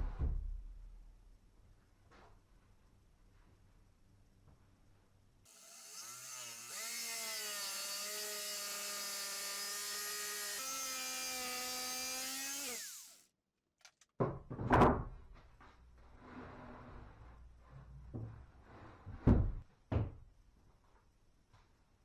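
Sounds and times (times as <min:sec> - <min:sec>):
power tool running: 0:05.5 - 0:13.2.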